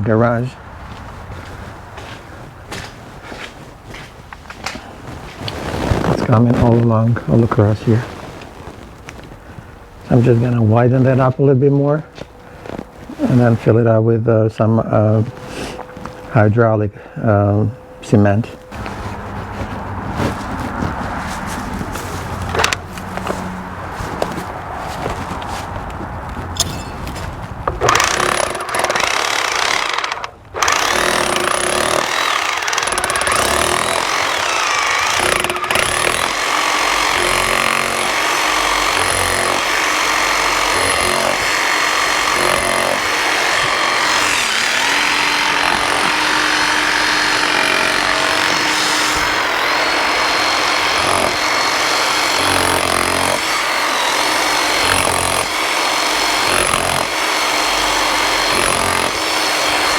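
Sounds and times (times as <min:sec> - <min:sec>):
electric chipping hammer on concrete: 0:26.6 - 0:59.9.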